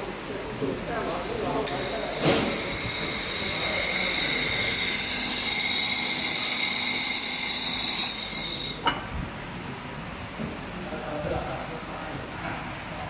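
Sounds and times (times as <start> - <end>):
laser machine hissing: 1.7 - 8.8.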